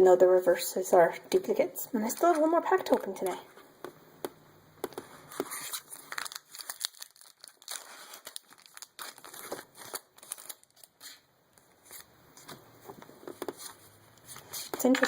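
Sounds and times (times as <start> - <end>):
foil wrapper crinkling and ripping: 5.4 - 11.3.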